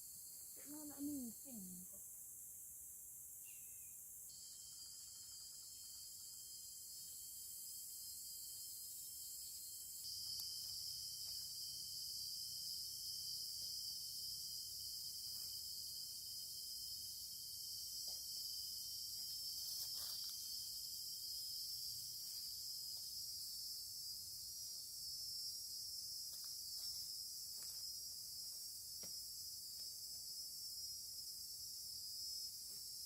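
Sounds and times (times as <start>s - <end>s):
insects chirring: 0.0s - 33.0s.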